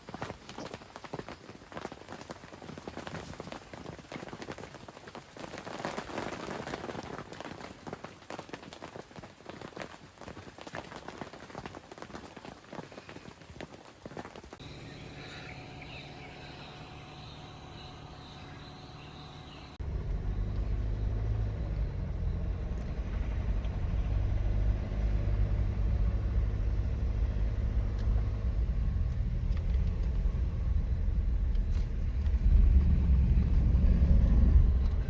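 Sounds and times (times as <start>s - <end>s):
vehicle low rumble: 14.6s - 35.0s.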